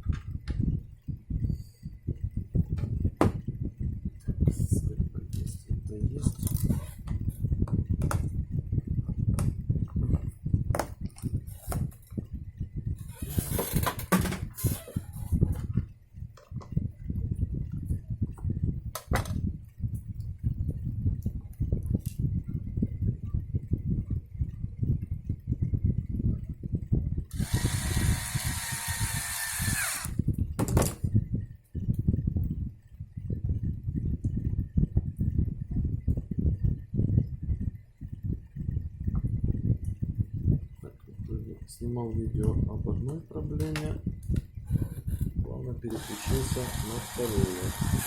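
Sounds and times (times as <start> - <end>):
knocks and rustling of parts: 13.4 - 16.8, 29.9 - 31.1
cordless screwdriver whining: 27.3 - 30.2, 45.9 - 48.0.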